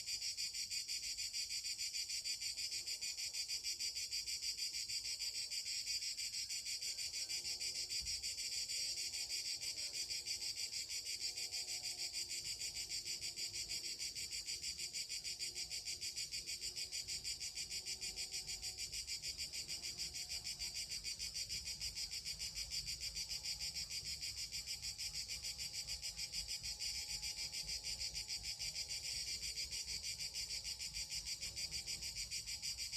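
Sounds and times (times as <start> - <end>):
cicadas buzzing: 0.0 - 32.9.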